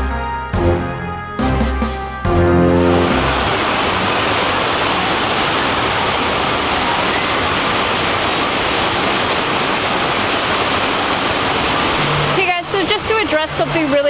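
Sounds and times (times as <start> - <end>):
loud steady rushing noise: 2.4 - 14.0.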